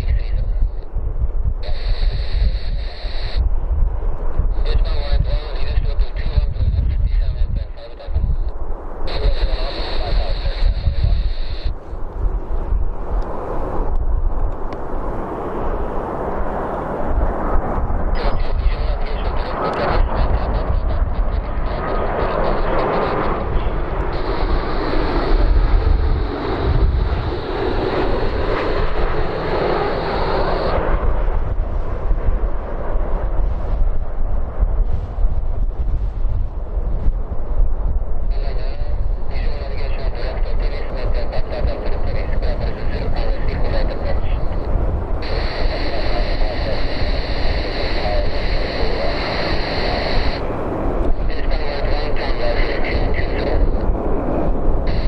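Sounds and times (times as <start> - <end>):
jet engines roaring: 0.0 - 55.0
wind buffeting microphone: 0.0 - 55.0.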